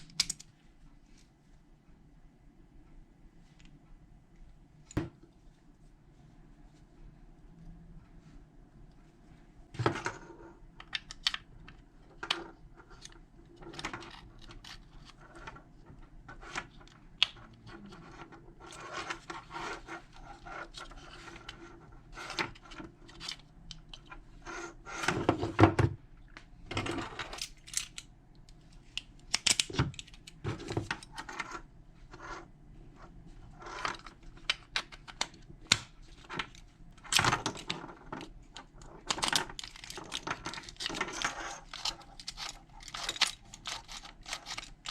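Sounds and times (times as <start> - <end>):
small metal lock parts clattering: 27.0 - 28.1, 36.2 - 44.9.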